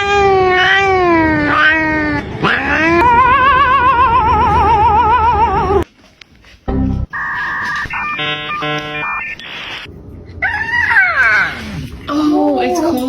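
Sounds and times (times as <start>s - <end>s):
cat yowling: 0.0s - 5.8s, 10.4s - 11.7s.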